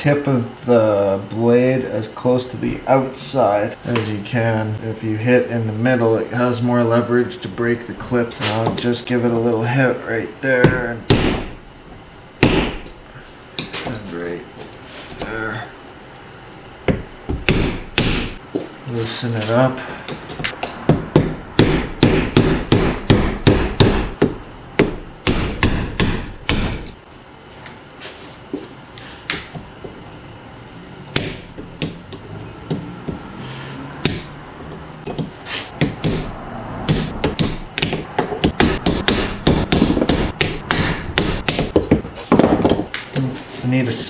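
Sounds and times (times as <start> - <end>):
hammer striking metal: 35.8 - 41.8.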